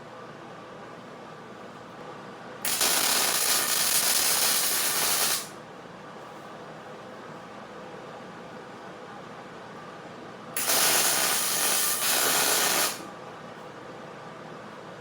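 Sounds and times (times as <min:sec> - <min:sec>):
welding arc hissing: 0:02.7 - 0:05.5, 0:10.6 - 0:13.0.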